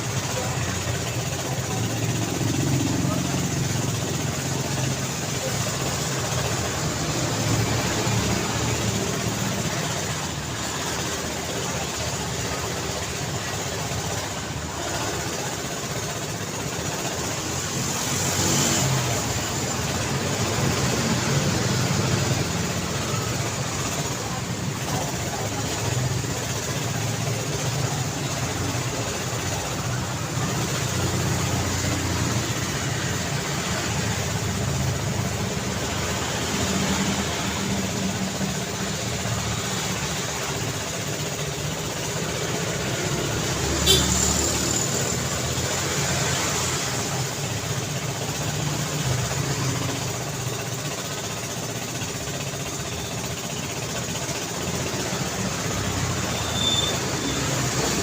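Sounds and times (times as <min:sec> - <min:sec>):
road traffic: 0:00.0 - 0:58.0.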